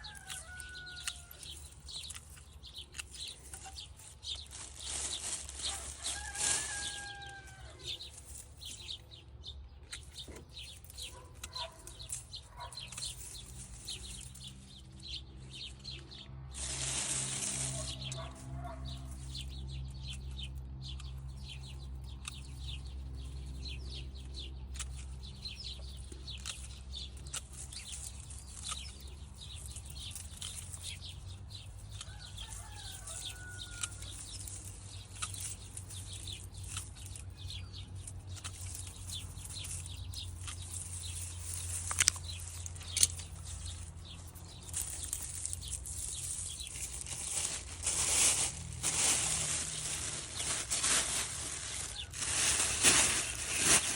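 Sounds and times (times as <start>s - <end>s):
plants rustling and crackling: 0.0s - 9.2s, 9.9s - 53.9s.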